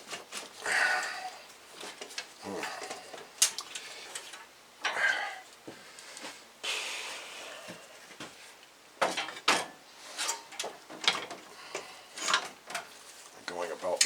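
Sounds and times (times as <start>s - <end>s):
metal clunks and knocks: 9.0s - 11.4s.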